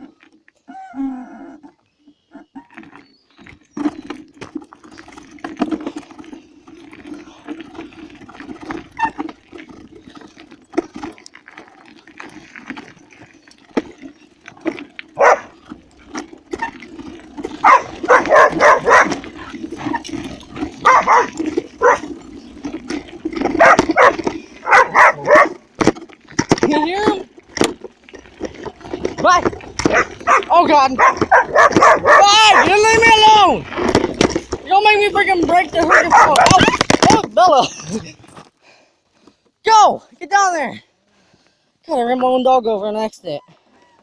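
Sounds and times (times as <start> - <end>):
dog barking: 15.2 - 15.5, 17.6 - 19.2, 20.8 - 22.0, 23.6 - 25.6, 29.9 - 32.7, 35.9 - 36.4.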